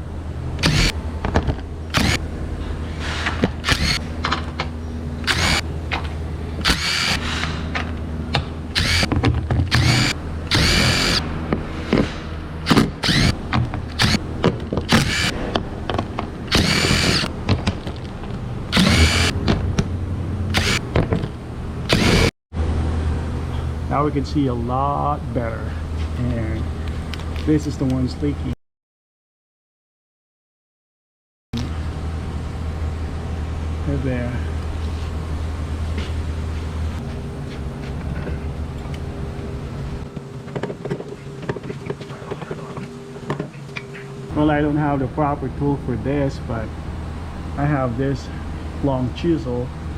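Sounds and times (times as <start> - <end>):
steady low hum: 0.0 - 28.6, 31.6 - 49.9
power drill whirring: 0.6 - 1.0, 1.9 - 2.2, 3.6 - 4.0, 5.2 - 5.6, 6.6 - 7.5, 8.7 - 9.1, 9.7 - 11.2, 12.6 - 14.2, 14.9 - 15.4, 16.5 - 17.3, 18.7 - 19.4, 20.5 - 20.9, 21.9 - 22.3.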